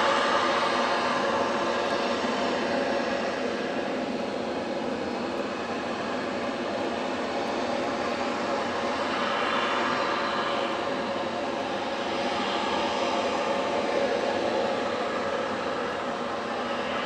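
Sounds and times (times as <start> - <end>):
droning hum with steady tones: 0.0 - 17.0.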